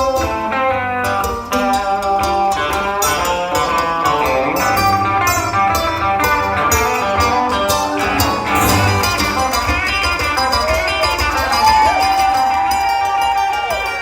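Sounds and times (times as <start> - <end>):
band music with guitar: 2.4 - 10.2
drum and cymbal hits: 8.0 - 10.0.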